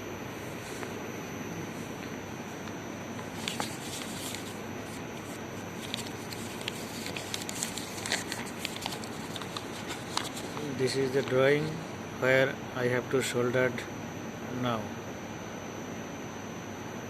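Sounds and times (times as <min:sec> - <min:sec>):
steady background hiss: 0:00.0 - 0:16.8.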